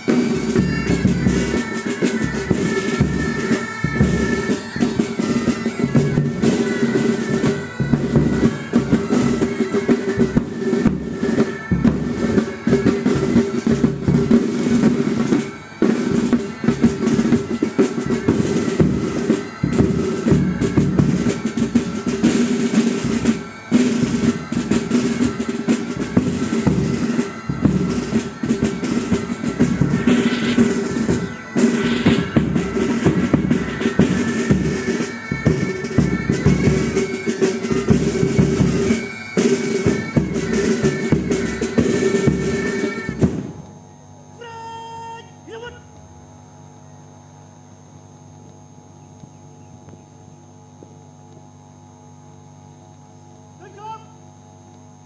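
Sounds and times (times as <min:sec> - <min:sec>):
snare and bass drums: 0:00.0 - 0:43.7
bagpipes with drones: 0:00.0 - 0:55.0.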